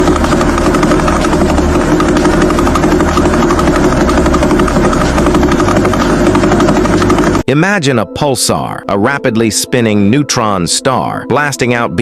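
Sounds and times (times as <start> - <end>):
low hum: 0.0 - 7.5
rapid even pulsing: 0.0 - 7.5.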